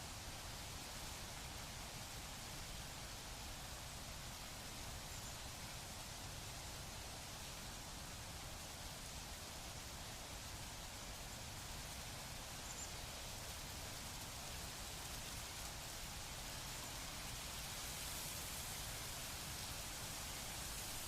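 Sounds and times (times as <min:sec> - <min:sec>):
wind rustling leaves: 0:00.0 - 0:21.0.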